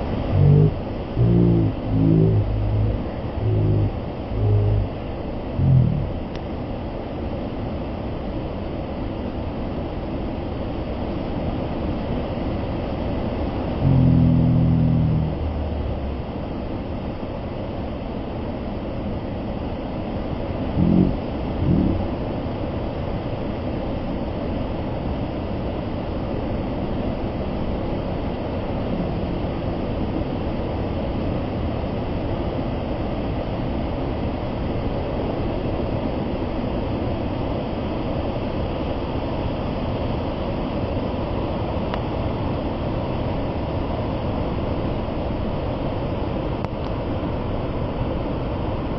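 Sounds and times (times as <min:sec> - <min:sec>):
low humming tone: 0:00.0 - 0:06.4, 0:13.8 - 0:17.1, 0:20.7 - 0:22.3.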